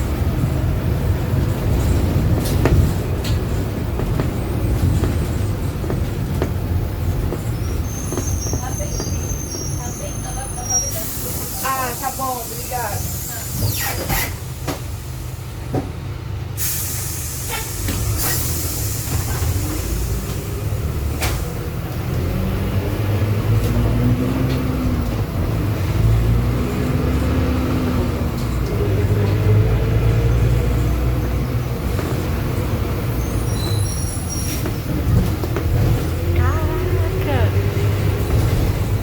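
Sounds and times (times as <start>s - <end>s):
bus drivetrain rumble: 0.0s - 39.0s
compressed air hiss: 16.6s - 19.4s.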